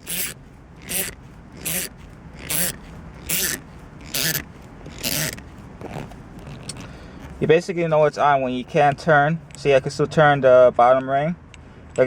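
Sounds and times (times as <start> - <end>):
shift knob squeaking on threads: 0.0 - 7.5.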